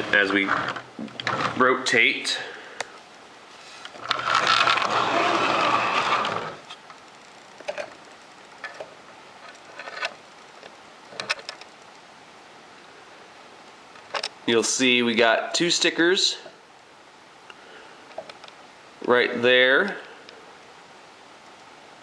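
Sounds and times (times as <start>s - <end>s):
plastic rattling and scraping: 0.0s - 1.7s, 3.6s - 6.9s, 7.6s - 8.0s, 8.6s - 11.7s.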